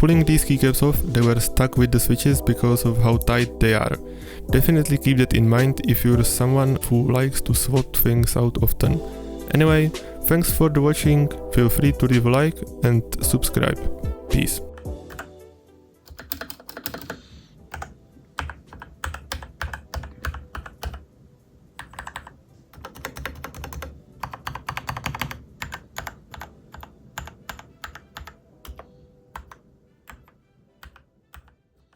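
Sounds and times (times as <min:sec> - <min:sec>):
mechanical keyboard typing: 0:15.1 - 0:15.3, 0:16.1 - 0:21.0, 0:21.8 - 0:31.6.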